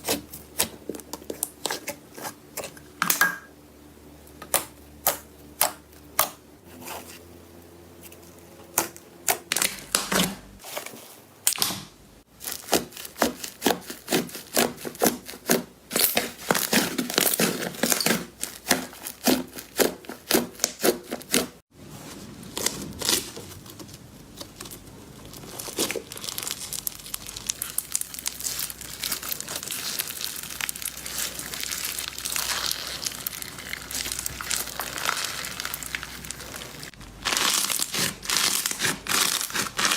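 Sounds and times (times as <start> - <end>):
slime squishing with sticky pops: 25.6 - 39.9.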